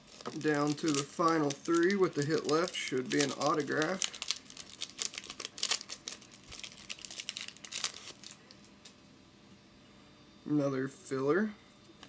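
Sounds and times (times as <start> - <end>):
wrapper crinkling and tearing: 0.0 - 8.5.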